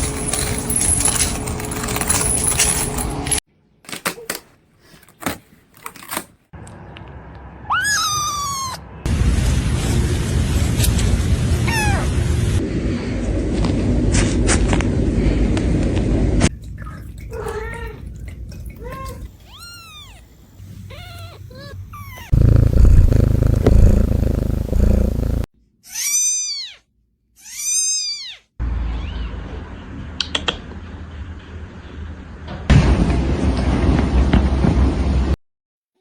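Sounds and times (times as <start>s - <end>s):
kittens meowing: 7.6s - 8.9s, 19.4s - 24.0s
low rumbling noise: 9.1s - 16.4s, 22.3s - 25.5s.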